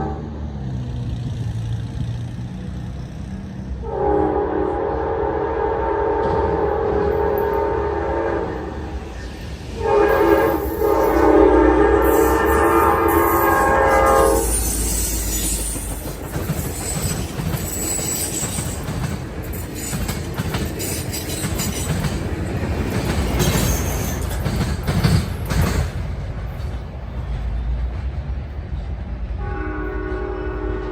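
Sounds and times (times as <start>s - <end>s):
train horn: 0.0s - 0.6s, 3.8s - 9.0s, 9.8s - 15.8s, 29.3s - 30.9s
train rumbling past: 0.0s - 30.9s
wheels clicking over rail joints: 12.0s - 29.1s.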